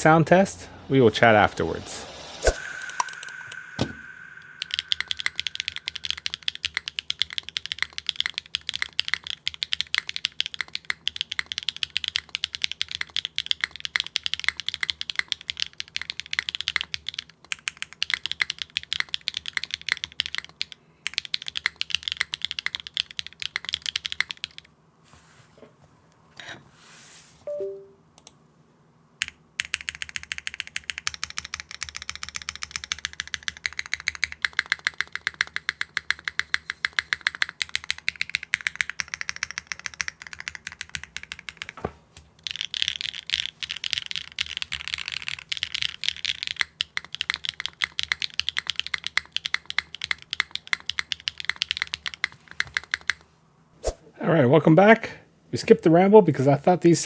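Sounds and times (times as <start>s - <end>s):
typing on mechanical keyboard: 2.8s - 24.7s, 29.2s - 41.8s, 42.4s - 53.2s.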